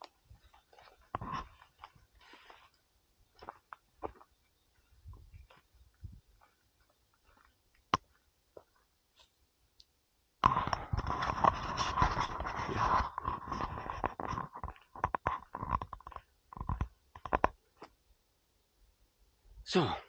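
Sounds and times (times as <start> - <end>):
close rustling and scraping: 0.0 - 7.6, 10.4 - 17.9.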